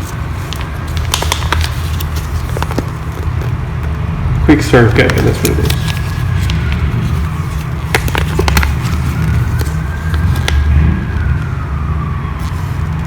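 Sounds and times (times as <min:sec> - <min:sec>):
paper leaflets rustling: 0:00.0 - 0:11.6, 0:12.2 - 0:13.0
siren wailing: 0:06.0 - 0:13.0.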